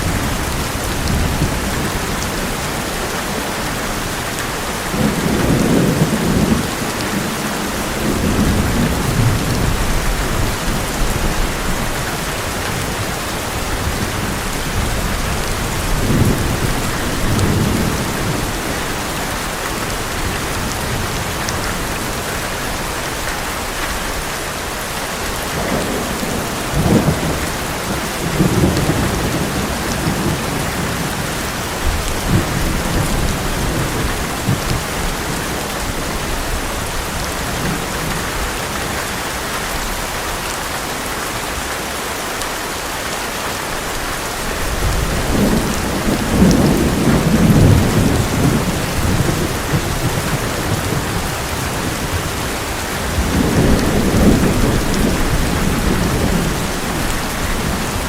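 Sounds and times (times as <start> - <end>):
heavy rain on a metal roof: 0.0 - 58.0
rolling thunder: 44.7 - 58.0.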